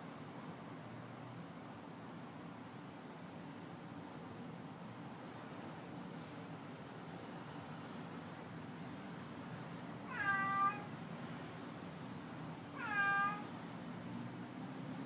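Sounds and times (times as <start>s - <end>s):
cat meowing: 10.1s - 10.9s, 12.7s - 13.6s.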